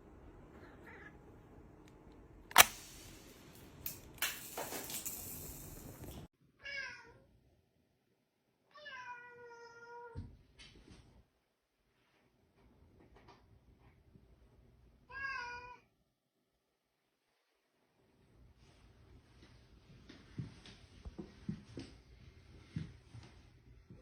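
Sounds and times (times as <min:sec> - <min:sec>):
cat meowing: 0:15.1 - 0:15.9.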